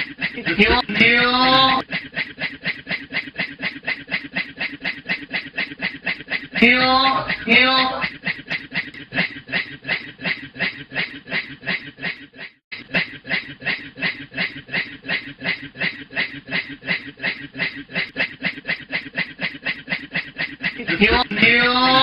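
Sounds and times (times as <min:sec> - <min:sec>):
man imitating train chuffing: 0:00.0 - 0:22.0.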